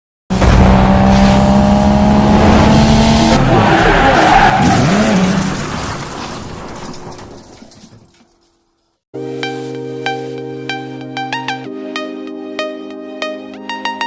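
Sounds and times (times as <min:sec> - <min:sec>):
loud car engine: 0:00.3 - 0:05.7
tyres skidding: 0:00.3 - 0:09.0.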